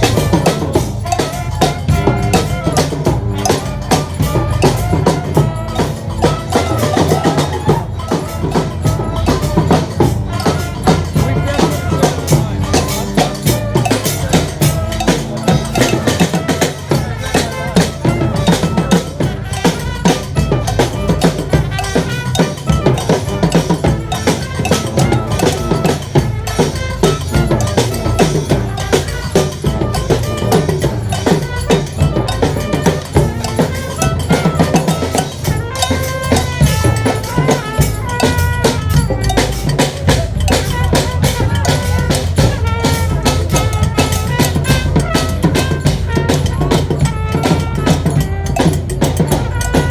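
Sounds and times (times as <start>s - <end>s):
cowbell: 0.0s - 49.9s
drums: 0.0s - 49.9s
horns playing melody: 0.0s - 49.9s.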